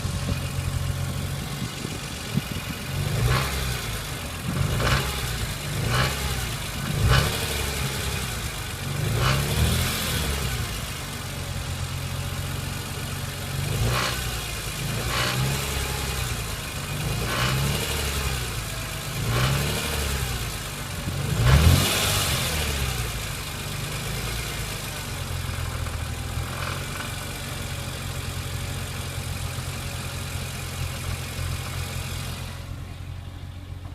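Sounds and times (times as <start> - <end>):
car engine idling and revving: 0.0 - 33.9.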